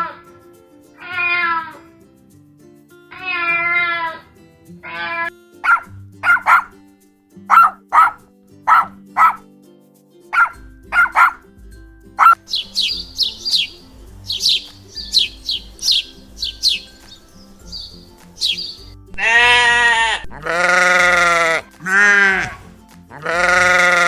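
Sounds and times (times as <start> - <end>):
background music: 0.0 - 24.0
dog barking: 4.9 - 6.8, 7.5 - 9.4, 10.3 - 11.4
bird chirping rapidly: 12.2 - 19.0.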